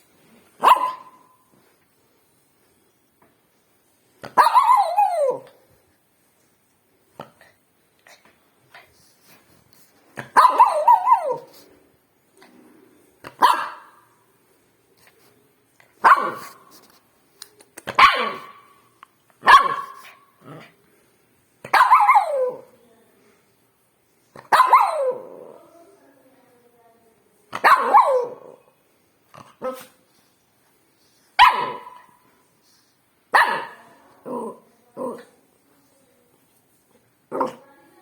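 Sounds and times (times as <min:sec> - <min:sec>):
dog barking: 0:00.6 - 0:01.4, 0:04.4 - 0:05.5, 0:10.2 - 0:11.5, 0:13.4 - 0:14.0, 0:16.0 - 0:16.6, 0:18.0 - 0:18.8, 0:19.4 - 0:20.2, 0:21.7 - 0:22.6, 0:24.5 - 0:25.3, 0:27.6 - 0:28.6, 0:31.4 - 0:32.2, 0:33.3 - 0:33.8.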